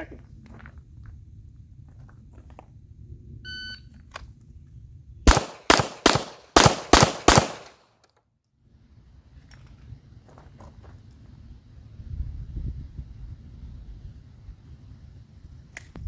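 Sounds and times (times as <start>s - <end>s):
handgun shots: 5.3s - 7.8s.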